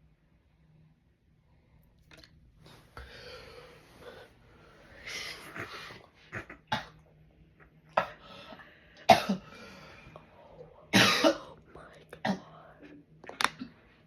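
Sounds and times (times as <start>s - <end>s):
person wheezing and snorting: 5.0s - 7.0s.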